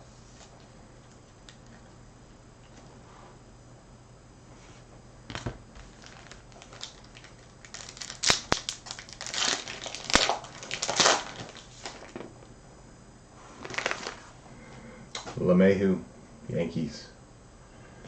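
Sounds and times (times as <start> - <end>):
foil wrapper tearing and crinkling: 5.8 - 12.2, 13.6 - 14.3.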